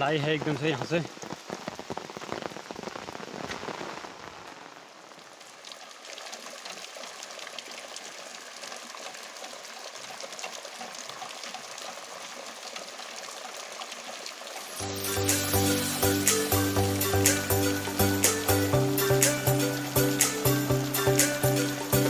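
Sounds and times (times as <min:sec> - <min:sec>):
heavy rain falling: 0:00.0 - 0:22.0.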